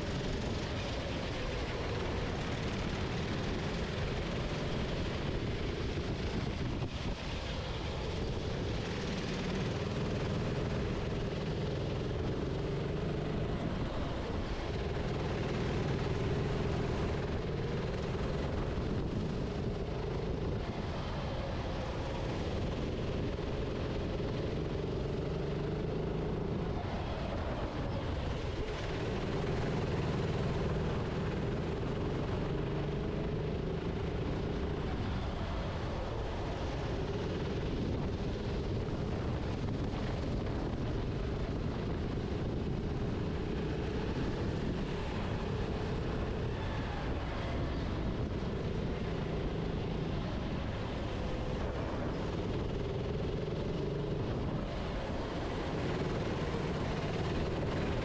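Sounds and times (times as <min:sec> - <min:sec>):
wind noise: 0:00.0 - 0:58.0
kart engine revving: 0:21.5 - 0:35.0.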